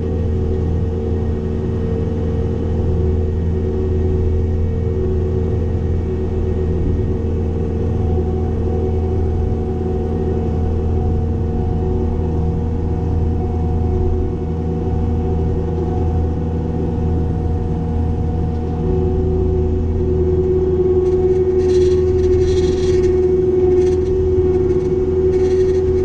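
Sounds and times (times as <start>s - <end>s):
steady whine: 0.0s - 26.0s
skid steer diesel engine: 2.5s - 26.0s
short crackling noises: 21.0s - 26.0s.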